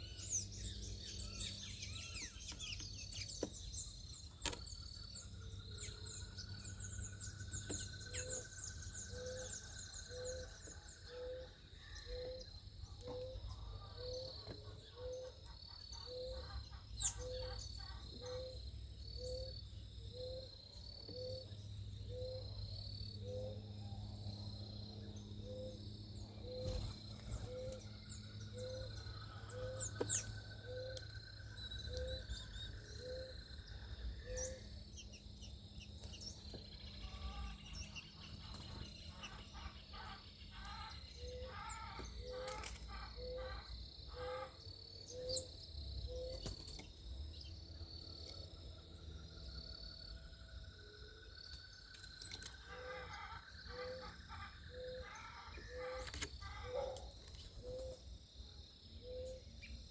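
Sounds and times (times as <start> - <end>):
high bird chirps and trills: 0.0 - 18.6, 25.2 - 44.5
sharp bird calls: 0.0 - 18.6, 23.2 - 46.9, 51.8 - 58.0
birds calling: 0.0 - 47.0, 51.4 - 58.0
steady insect buzz: 0.0 - 59.9.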